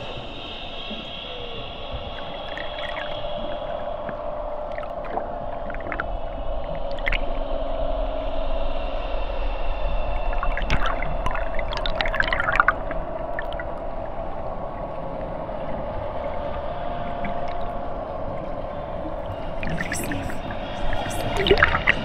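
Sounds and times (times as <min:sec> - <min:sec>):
sustained drone: 0:00.0 - 0:22.0
gurgling splashing clicks: 0:21.1 - 0:22.0.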